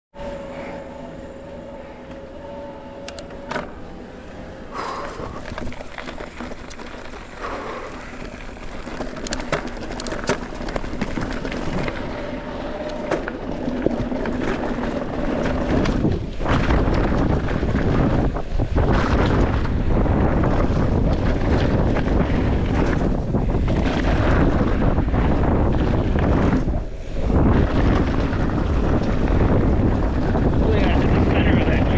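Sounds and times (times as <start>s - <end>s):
buzz of coasting rear hub: 0.1s - 31.9s
wind on microphone: 0.2s - 31.9s
bike tyres rolling on dirt: 0.6s - 31.9s.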